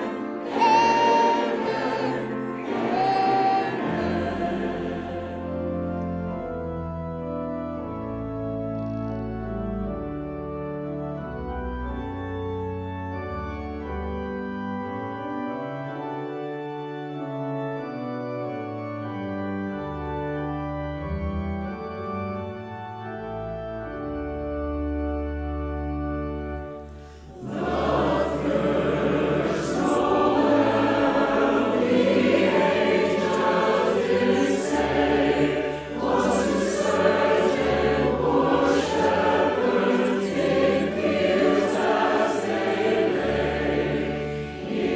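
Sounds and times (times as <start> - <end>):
choir singing: 0.0 - 6.7, 27.1 - 44.9
pipe organ playing slow chords: 0.0 - 44.9.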